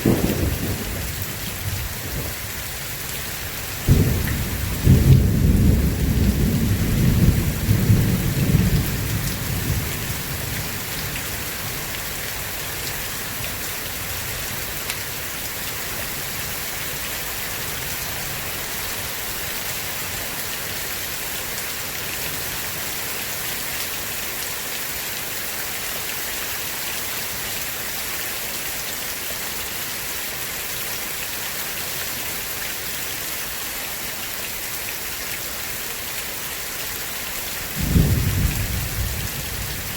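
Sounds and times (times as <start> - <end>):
thunder rumbling: 0.0 - 2.4, 3.8 - 10.3, 37.8 - 39.9
heavy rain: 0.0 - 39.9.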